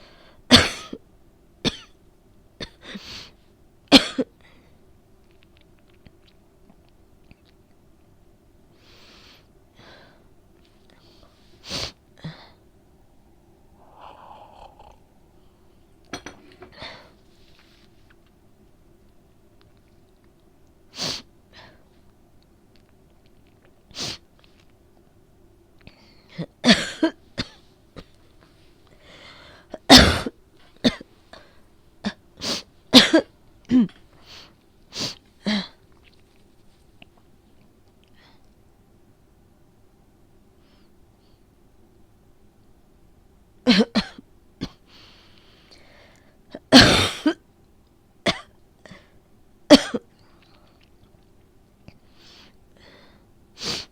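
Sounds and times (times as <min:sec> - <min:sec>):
woman coughing: 0:00.5 - 0:01.0, 0:01.7 - 0:02.0, 0:03.9 - 0:04.3, 0:26.6 - 0:27.6, 0:29.8 - 0:31.0, 0:33.0 - 0:34.0, 0:43.7 - 0:44.8, 0:46.7 - 0:47.4, 0:48.3 - 0:48.5, 0:49.7 - 0:50.1
woman breathing: 0:08.8 - 0:10.3, 0:10.9 - 0:17.2, 0:29.0 - 0:29.7, 0:52.0 - 0:53.9
breathy exhale: 0:11.0 - 0:16.0.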